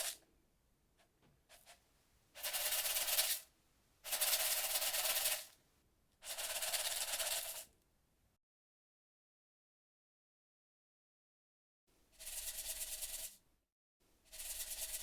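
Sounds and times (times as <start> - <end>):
rice rattling in a container: 4.1 - 5.5.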